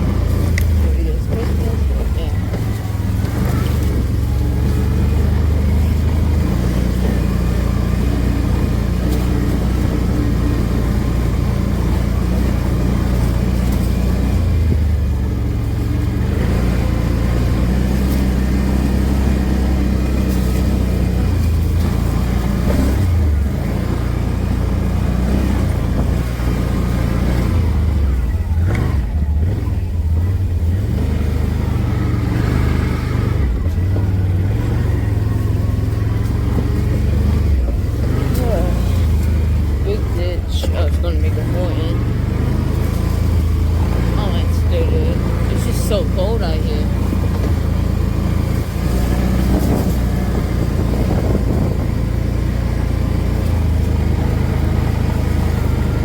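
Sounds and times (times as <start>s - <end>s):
small engine running: 0.0s - 56.0s
wind noise on microphone: 49.4s - 52.3s.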